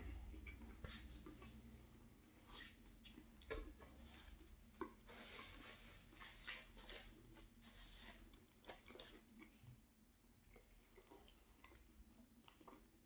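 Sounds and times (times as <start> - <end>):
faint chewing: 0.0 - 13.0.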